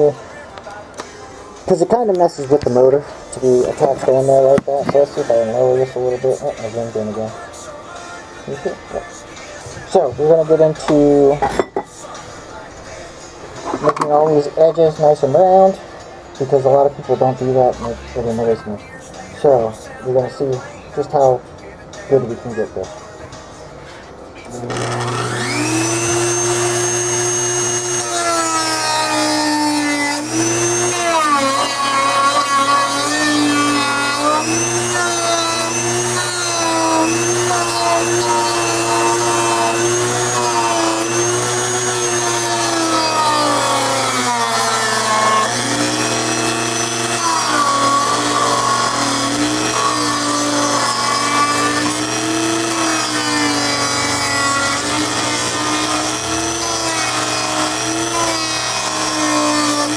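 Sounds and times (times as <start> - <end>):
rotary tool motor whine: 24.6 - 59.9.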